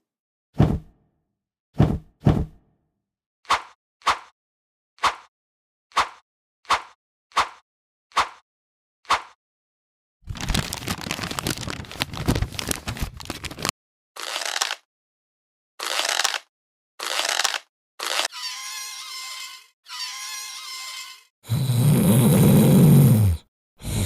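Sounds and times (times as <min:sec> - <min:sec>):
whistle-like tone: 0:18.3 - 0:21.3.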